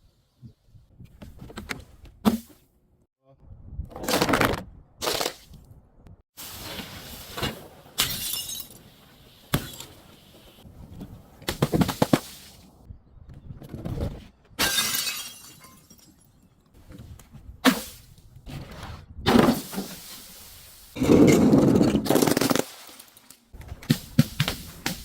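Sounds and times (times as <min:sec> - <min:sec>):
glass bottles smashing: 0:08.0 - 0:08.9, 0:14.6 - 0:16.5.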